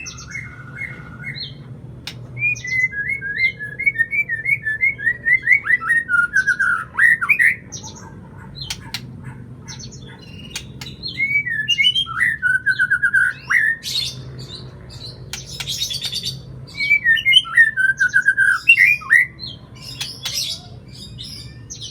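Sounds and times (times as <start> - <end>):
bird singing whistled notes: 2.4 - 7.6, 9.9 - 21.9
bird harsh rasping notes: 5.8 - 21.9.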